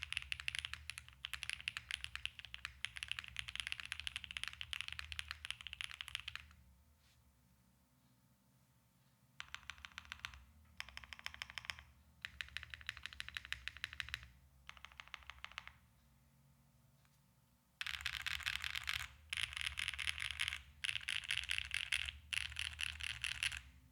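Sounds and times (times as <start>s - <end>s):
rapid mechanical keyboard keystrokes: 0.0s - 6.5s, 9.4s - 15.8s, 17.8s - 23.7s.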